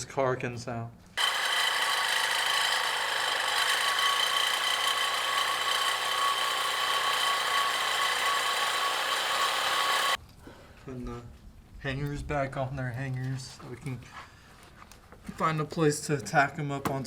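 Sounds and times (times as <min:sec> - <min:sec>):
power tool cutting steel: 0:01.2 - 0:10.2.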